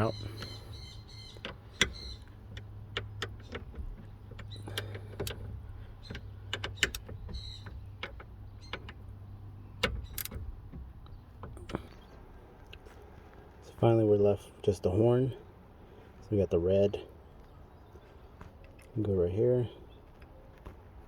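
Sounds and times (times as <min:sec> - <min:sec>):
clicks and knocks of tools handled: 0:09.8 - 0:12.0.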